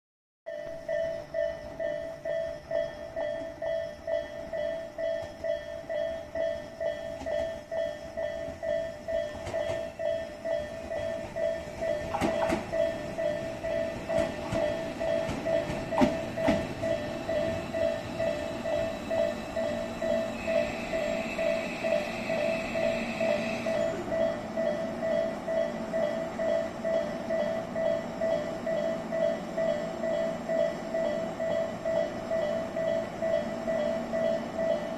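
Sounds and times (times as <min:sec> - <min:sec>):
level crossing alarm ringing: 0:00.5 - 0:34.9
train passing: 0:00.5 - 0:34.9
train wheels clacking over rail joints: 0:07.1 - 0:19.0.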